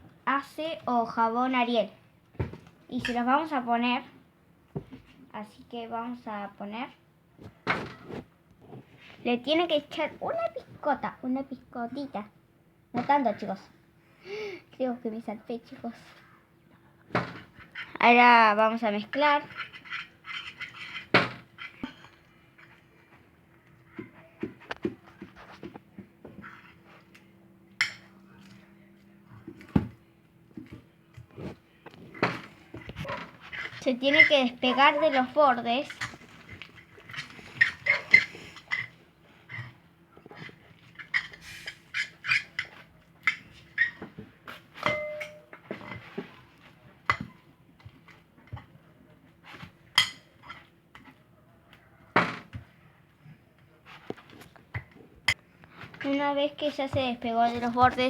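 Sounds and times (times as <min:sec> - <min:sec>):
utensil stirring slime: 0:33.3 - 0:39.8.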